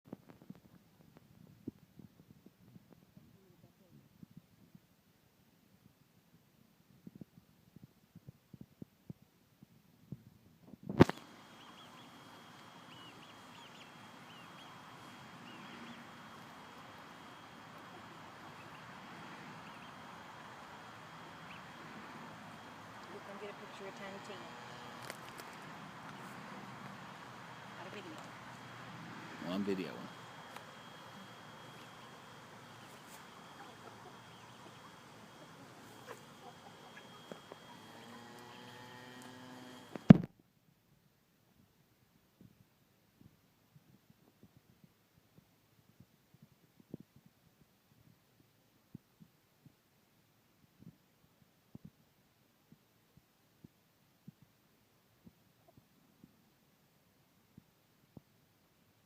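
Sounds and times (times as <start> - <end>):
baby chicks peeping: 11.0 - 28.8, 29.4 - 40.1
steady hiss: 11.0 - 40.3
hen calling: 11.2 - 28.8, 29.4 - 39.5
chicks clicking and scratching: 30.5 - 40.0.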